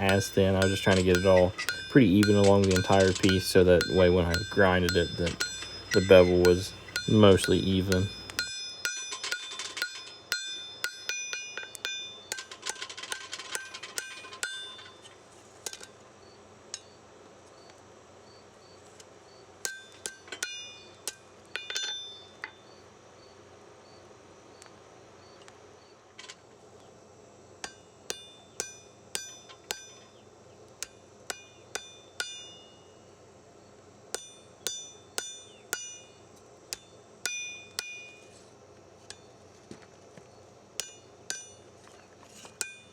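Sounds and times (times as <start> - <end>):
hammer striking blade on anvil: 0.0 - 14.9, 19.7 - 22.2, 27.6 - 30.0, 31.3 - 32.7, 34.2 - 36.1, 36.7 - 38.2, 40.8 - 41.6, 42.6 - 42.9.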